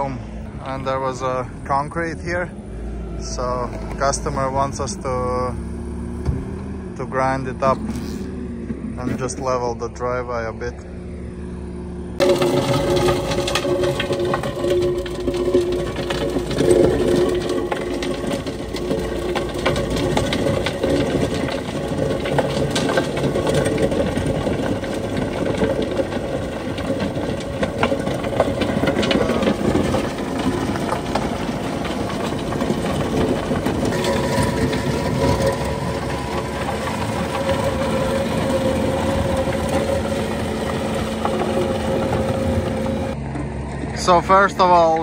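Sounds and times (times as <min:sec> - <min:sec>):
engine and hydraulic drone: 0:00.0 - 0:45.0
stones knocking against rotor: 0:12.2 - 0:43.3.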